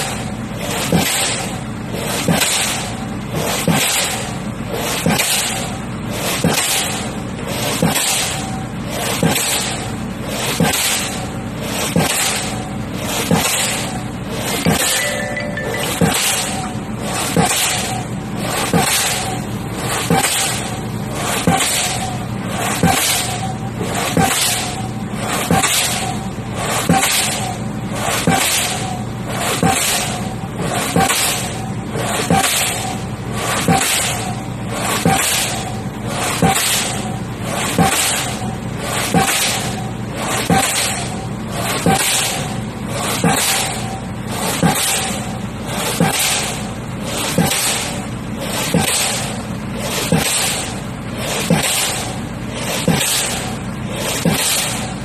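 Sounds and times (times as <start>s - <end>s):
pile hammer metallic bangs: 14.5s - 18.0s, 51.4s - 55.0s
pile hammer bangs: 48.6s - 49.4s, 52.8s - 53.5s, 54.1s - 54.9s.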